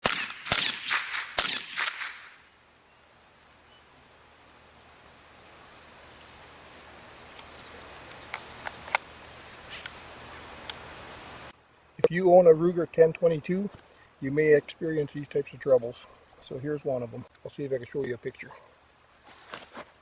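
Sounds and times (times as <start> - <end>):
sharp gunshots: 0.0 - 2.4
crickets chirring: 1.1 - 20.0.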